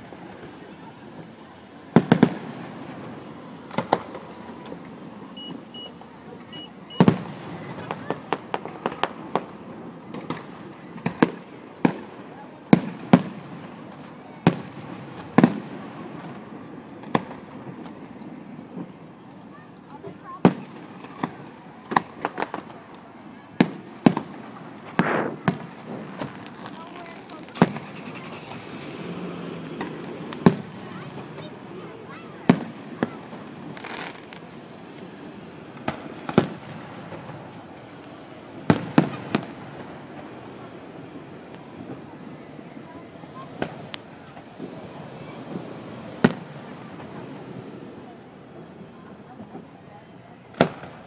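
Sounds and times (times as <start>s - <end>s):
fireworks bursting: 0.0s - 51.0s
fireworks shells bursting: 19.9s - 42.6s.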